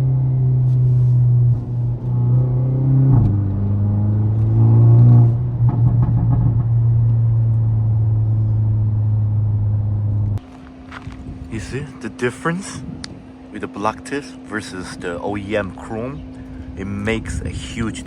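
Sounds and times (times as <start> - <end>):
deep car exhaust drone: 0.0 - 18.0.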